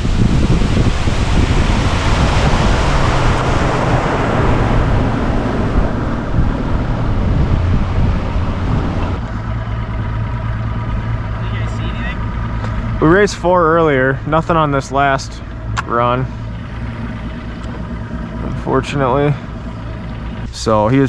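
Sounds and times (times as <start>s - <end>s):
wind rushing on microphone: 0.0s - 9.6s, 16.3s - 20.9s
water noise: 0.0s - 11.6s, 12.2s - 21.0s
boat engine hum: 0.0s - 21.0s.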